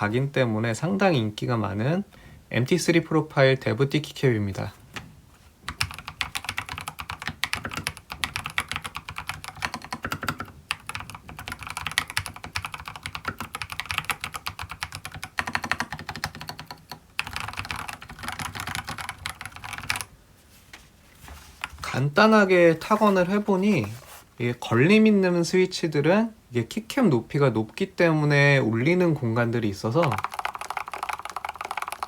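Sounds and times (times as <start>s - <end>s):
fast typing on mechanical keyboard: 5.7s - 20.1s, 30.0s - 32.0s.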